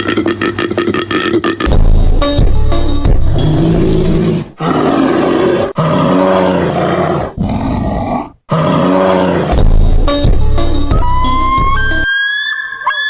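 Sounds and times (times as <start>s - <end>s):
large animal roaring: 3.3s - 9.6s.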